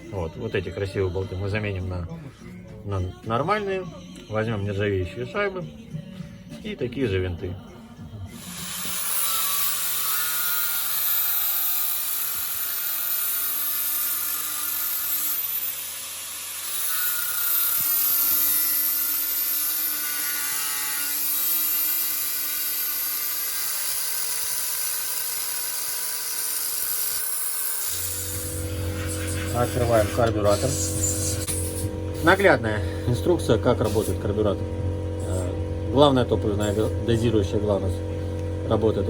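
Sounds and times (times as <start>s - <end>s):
high-speed tool running: 8.3s - 39.0s.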